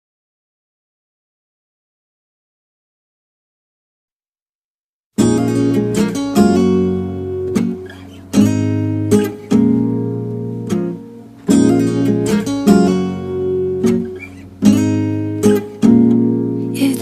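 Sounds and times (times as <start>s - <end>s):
acoustic guitar strumming chords: 5.2s - 17.0s.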